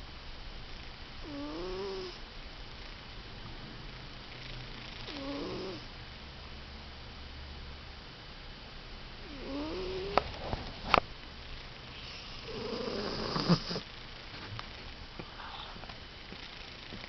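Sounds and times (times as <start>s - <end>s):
cat snoring: 1.2s - 2.2s, 4.3s - 5.9s, 9.2s - 10.2s, 11.9s - 13.9s.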